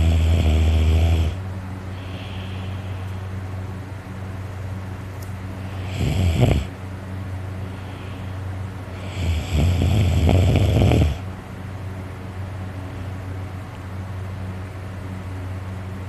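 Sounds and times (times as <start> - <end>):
person snoring loudly: 0.0 - 1.4, 5.7 - 6.7, 9.0 - 11.2
steady low hum: 0.0 - 16.0.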